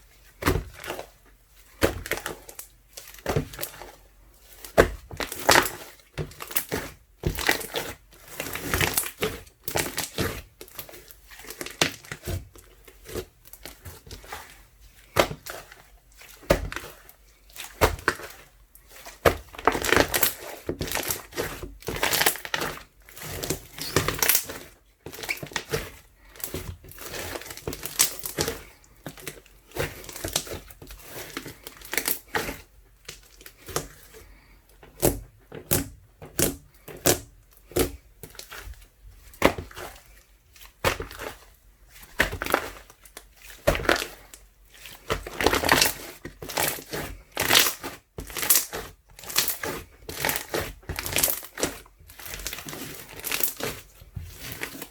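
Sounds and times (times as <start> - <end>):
slime crackling and popping: 19.0 - 25.9, 26.5 - 29.3, 40.6 - 54.9.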